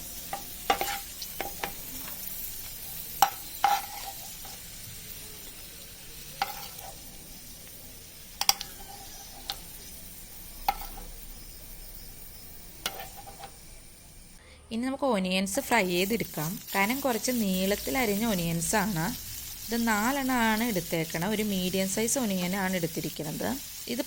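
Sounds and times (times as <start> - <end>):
oil sizzling in a pan: 0.0 - 14.4, 15.3 - 24.0
metal spoon knocking on pan: 6.4 - 7.0, 10.7 - 11.1, 12.8 - 13.6.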